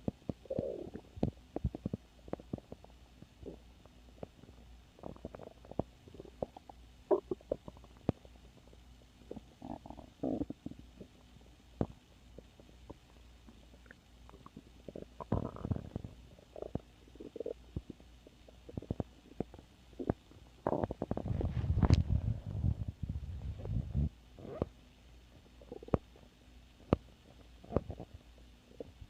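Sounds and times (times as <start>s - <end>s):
stomach growling: 0.0s - 13.1s, 13.7s - 24.8s, 25.5s - 29.0s.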